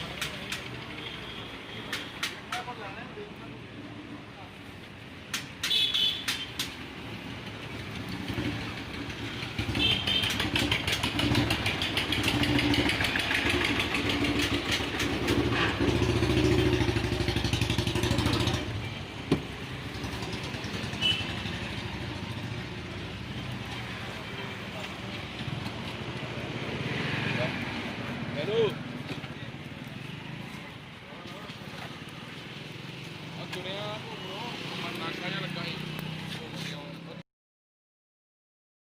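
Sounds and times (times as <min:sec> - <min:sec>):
sharp clicks: 0:00.0 - 0:00.8, 0:01.8 - 0:02.7, 0:05.2 - 0:06.8
motorcycle engine running: 0:07.8 - 0:18.8.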